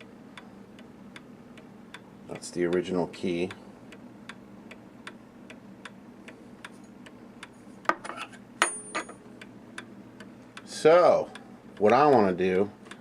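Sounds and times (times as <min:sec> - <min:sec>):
clock ticking: 0:10.6 - 0:13.0.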